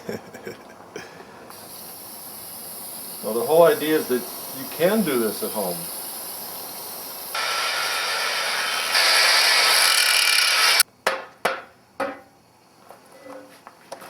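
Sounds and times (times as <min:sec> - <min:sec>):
abrasive tool rasping on metal: 0:07.2 - 0:10.8.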